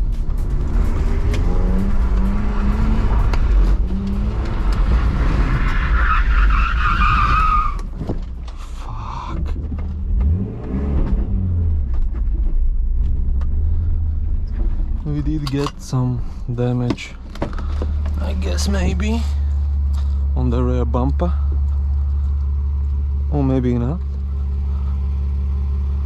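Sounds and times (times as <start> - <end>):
car engine revving: 0.0 - 26.0
loud tyre squeal: 5.2 - 7.9.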